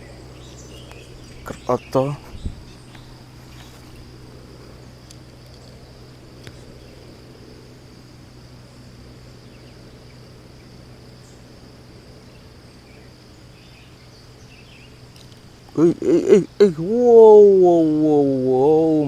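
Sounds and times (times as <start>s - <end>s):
insect chorus buzzing: 0.0s - 19.0s
low steady hum: 0.0s - 19.0s.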